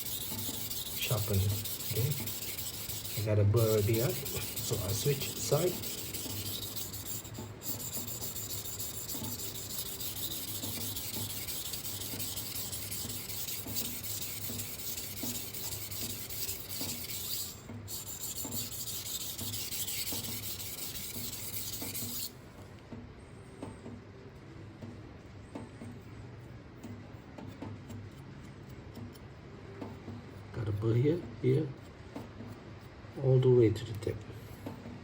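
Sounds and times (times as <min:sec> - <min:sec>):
knife scraping on whetstone: 0:00.0 - 0:22.3.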